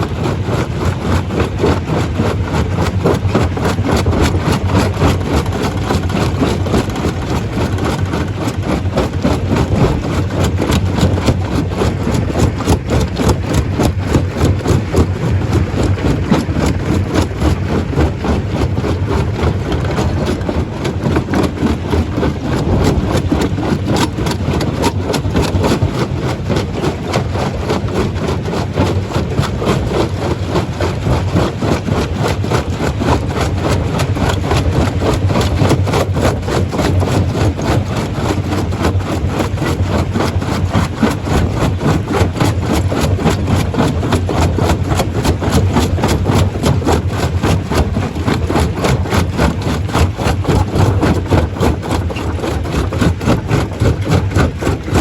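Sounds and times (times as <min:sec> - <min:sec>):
rock being crushed rattling: 0:19.4 - 0:25.6, 0:46.3 - 0:55.0.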